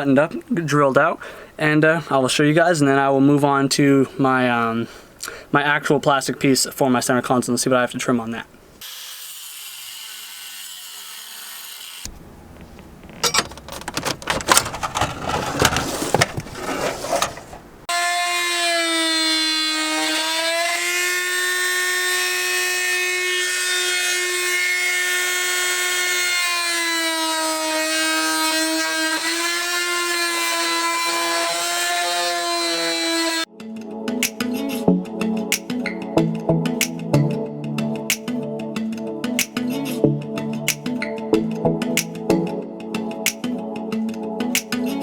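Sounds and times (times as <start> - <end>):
rough tool noise bursts: 13.2 - 17.7.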